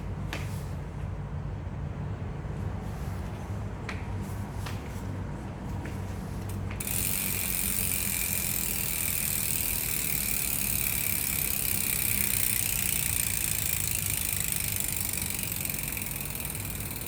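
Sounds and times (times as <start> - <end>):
bicycle hub ratcheting buzz: 6.5 - 17.0.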